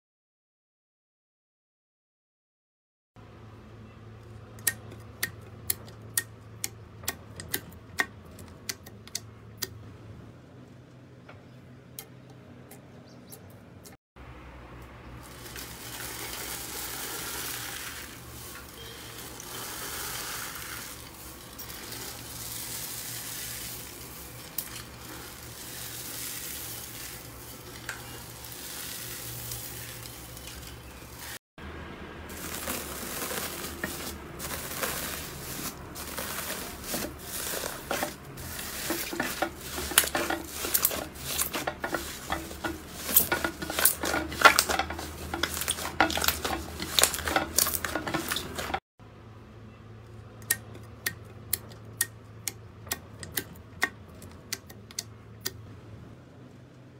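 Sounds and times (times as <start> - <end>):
slime squishing and crackling: 32.3 - 48.8.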